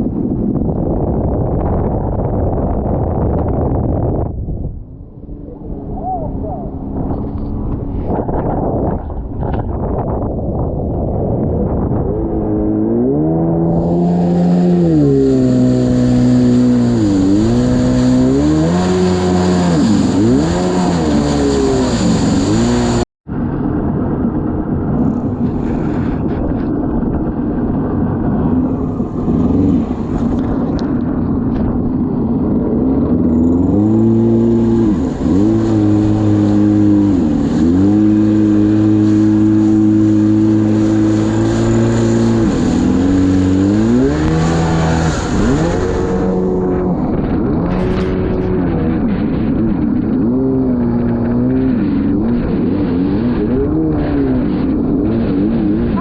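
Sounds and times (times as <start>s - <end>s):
rush of noise: 0.0s - 56.0s
jet ski engine revving: 4.9s - 10.3s, 11.4s - 23.0s, 28.2s - 56.0s.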